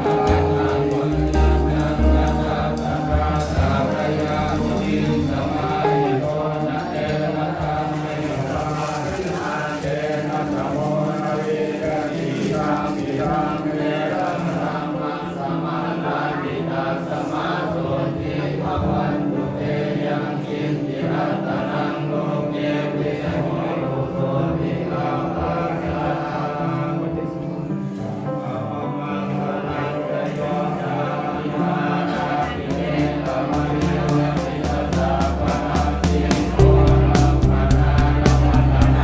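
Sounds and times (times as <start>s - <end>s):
voices chanting in unison: 0.0s - 39.0s.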